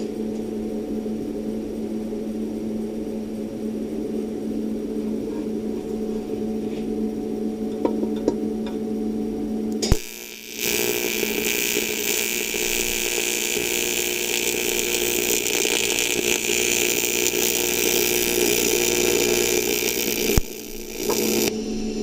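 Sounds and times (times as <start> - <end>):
welding arc buzzing hiss: 9.8 - 22.0.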